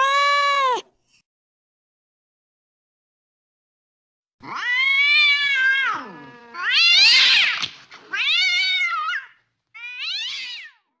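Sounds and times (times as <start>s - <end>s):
cat yowling: 0.0s - 0.9s, 4.4s - 10.8s.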